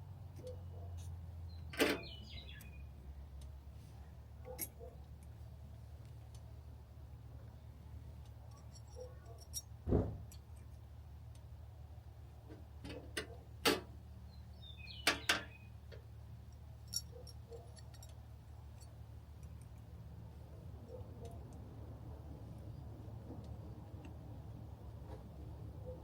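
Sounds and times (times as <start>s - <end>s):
metallic clinks of hand tools: 8.5s - 10.7s, 16.8s - 19.8s.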